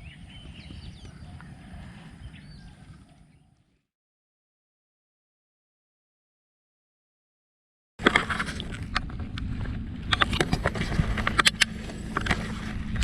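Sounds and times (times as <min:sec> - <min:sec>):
wind buffeting microphone: 0:00.0 - 0:03.8.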